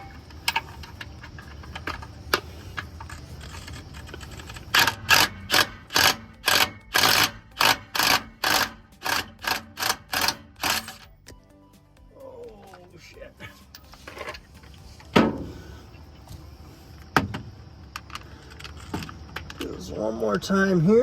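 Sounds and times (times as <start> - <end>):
socket ratchet clicking: 0.0 - 11.4.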